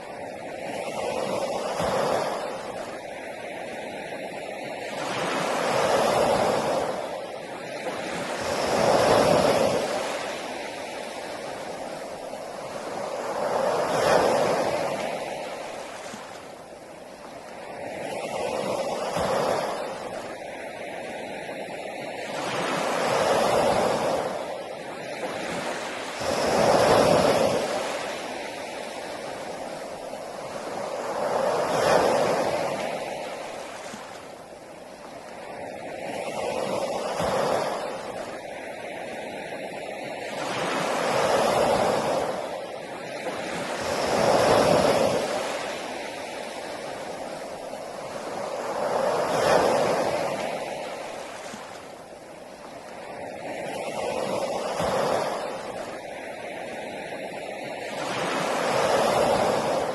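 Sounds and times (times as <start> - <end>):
sea waves breaking on beach: 0.0 - 59.9.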